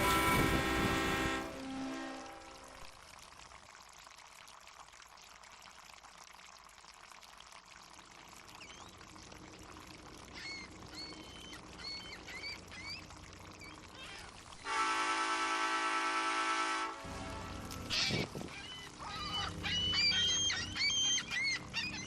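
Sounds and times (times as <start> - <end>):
water lapping and splashing: 0.0 - 22.0
seagulls calling: 10.3 - 14.3, 17.7 - 22.0.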